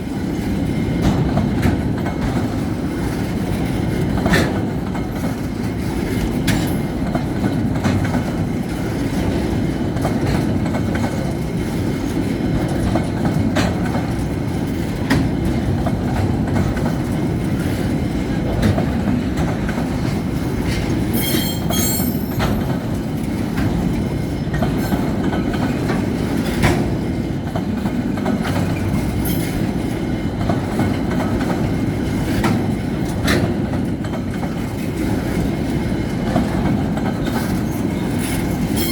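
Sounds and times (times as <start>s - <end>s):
freight train rumbling: 0.0s - 38.9s
wheels clicking over rail joints: 0.3s - 38.9s
high wheel squeal: 21.1s - 22.4s.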